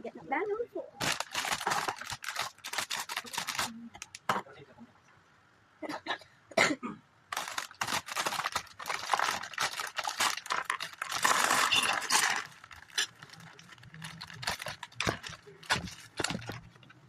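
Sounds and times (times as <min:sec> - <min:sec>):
plastic bag crinkling: 0:01.0 - 0:04.3, 0:07.3 - 0:17.0
plastic bricks clicking and rattling: 0:01.0 - 0:04.3, 0:07.3 - 0:17.0.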